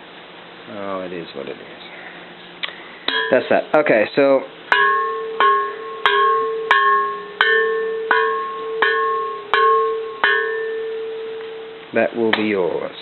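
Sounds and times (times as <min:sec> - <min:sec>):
temple bell ringing: 0:03.1 - 0:03.6, 0:04.7 - 0:11.9.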